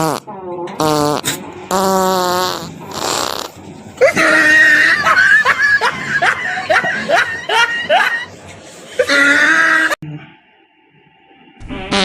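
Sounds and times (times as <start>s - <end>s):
prank fart noise: 0.0s - 0.2s, 0.8s - 3.6s, 11.6s - 12.0s
women laughing and shrieking: 4.0s - 8.3s.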